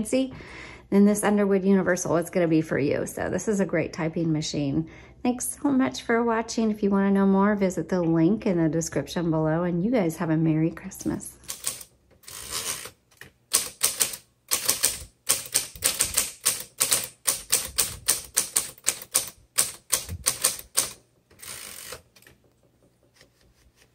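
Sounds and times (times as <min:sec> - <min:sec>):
typewriter keystrokes: 0:11.5 - 0:22.4.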